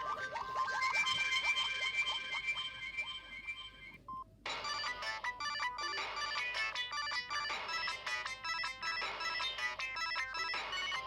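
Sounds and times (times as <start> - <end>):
polyphonic ringtone melody: 0.0 - 11.0.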